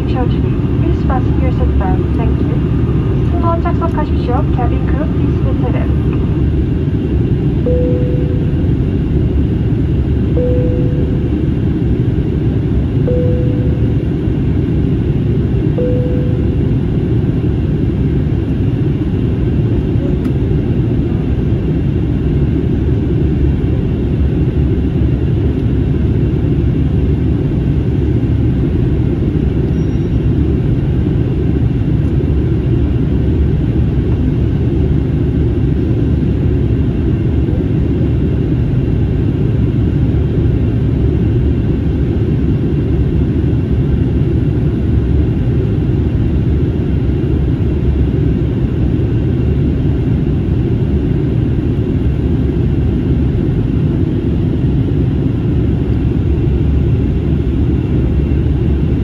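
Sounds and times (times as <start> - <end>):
airplane cabin engine rumble: 0.0 - 59.0
short clear tone: 7.7 - 8.7, 10.4 - 11.3, 13.1 - 14.0, 15.8 - 16.6.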